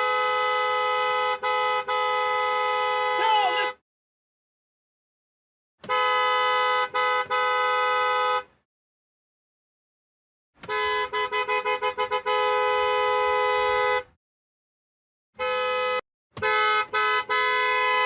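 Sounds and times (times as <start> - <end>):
car horn honking: 0.0 - 3.8, 5.8 - 8.6, 10.6 - 14.2, 15.3 - 18.0.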